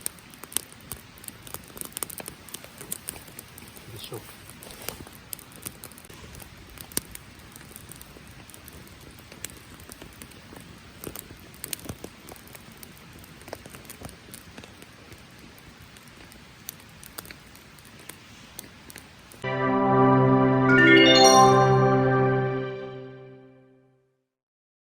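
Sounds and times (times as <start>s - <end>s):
campfire crackling and popping: 0.0s - 19.4s
steady rain falling: 0.0s - 19.6s.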